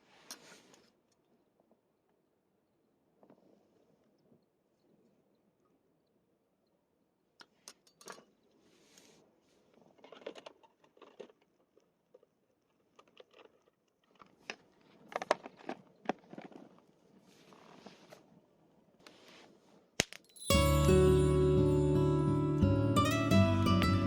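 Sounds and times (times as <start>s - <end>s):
soft rustling: 14.3s - 19.9s.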